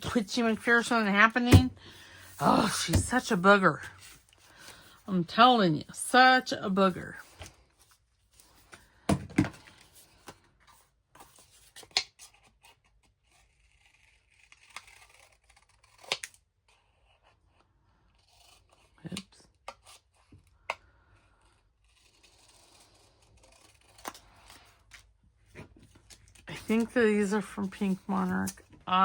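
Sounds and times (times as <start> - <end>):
scissors snipping paper: 13.4 - 16.4.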